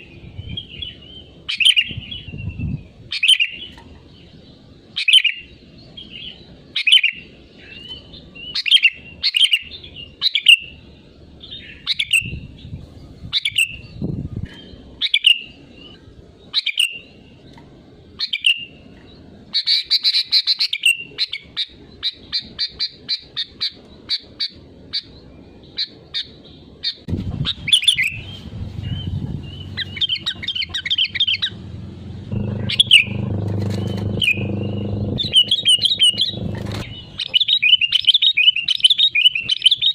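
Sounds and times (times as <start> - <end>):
bulbul calling: 19.5 - 39.9
low hum: 27.1 - 37.3.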